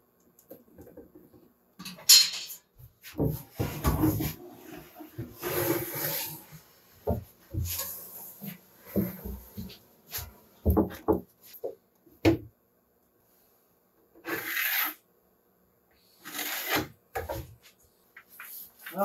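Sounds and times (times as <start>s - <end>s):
wood scraping over wood: 3.3s - 6.6s, 16.2s - 17.5s.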